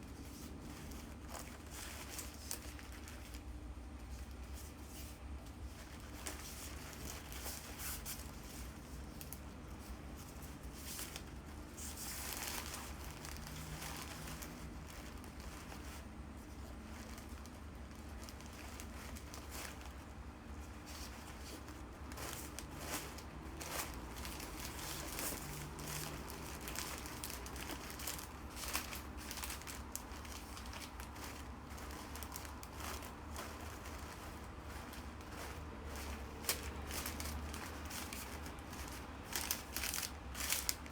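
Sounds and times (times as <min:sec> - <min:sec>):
wrapping material crinkling: 0:00.0 - 0:40.9.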